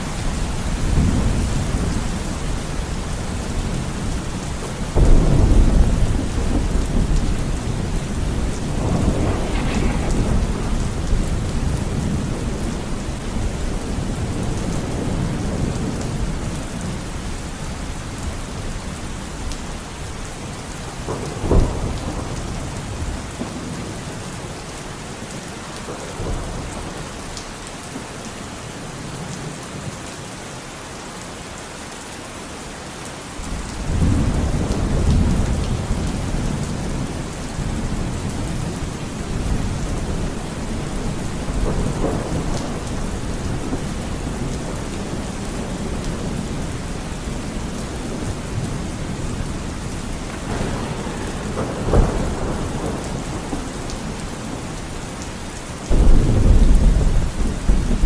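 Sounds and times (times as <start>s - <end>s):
sharp thunderclap: 0.0s - 16.4s, 21.0s - 23.9s, 33.5s - 55.1s, 55.9s - 58.0s
low roll of thunder: 0.0s - 20.2s, 20.9s - 24.8s, 33.5s - 58.0s
steady rain: 0.0s - 58.0s.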